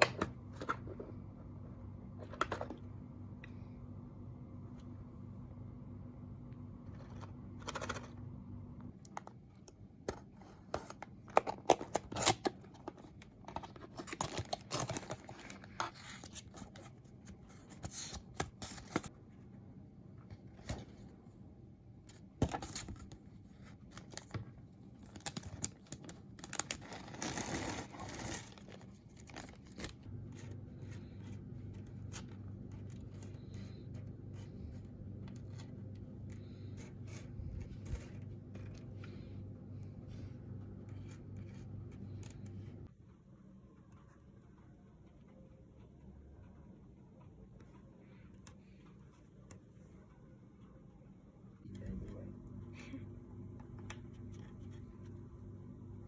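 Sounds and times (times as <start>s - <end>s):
low steady hum: 0.0s - 56.0s
packaging tearing and crinkling: 13.9s - 15.6s, 25.2s - 30.0s.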